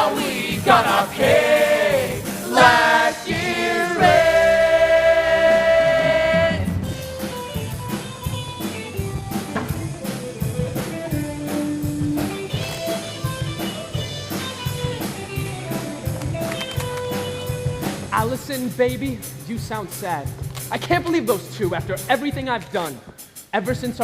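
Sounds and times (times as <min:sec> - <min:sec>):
quick drum beat: 0:00.0 - 0:05.0, 0:17.6 - 0:24.0
instrumental rock music: 0:00.0 - 0:22.6.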